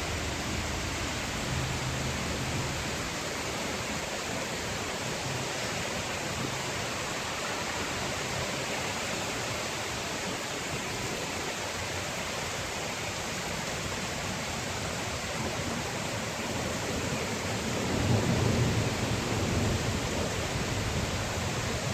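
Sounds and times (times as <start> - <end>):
low rumble of thunder: 0.0 - 3.4, 16.7 - 21.9
heavy rain: 0.0 - 21.9.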